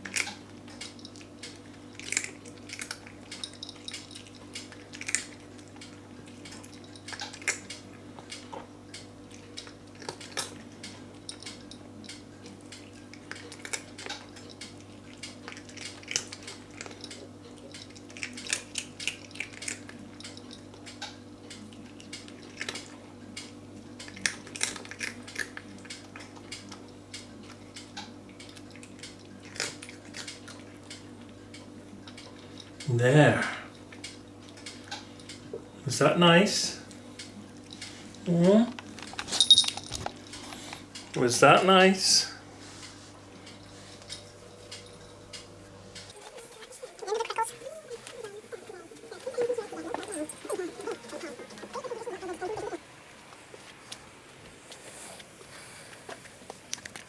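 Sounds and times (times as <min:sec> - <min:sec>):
small clicks against a dish: 0:00.0 - 0:32.9
steady low hum: 0:00.0 - 0:56.6
cat crunching treats: 0:00.0 - 0:57.0.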